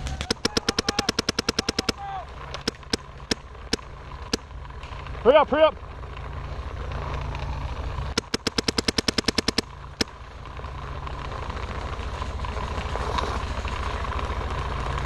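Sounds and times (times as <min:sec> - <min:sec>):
paintball marker firing: 0:00.0 - 0:04.5, 0:08.1 - 0:10.2
steady low rumble: 0:00.0 - 0:15.0.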